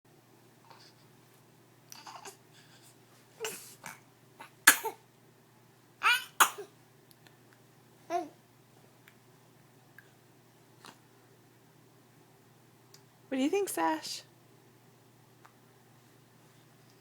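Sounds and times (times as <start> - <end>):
short sharp coughs: 4.7 - 5.0.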